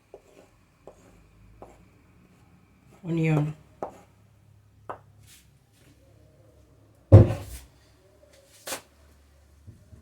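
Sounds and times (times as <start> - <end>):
loud knock: 7.1 - 7.6.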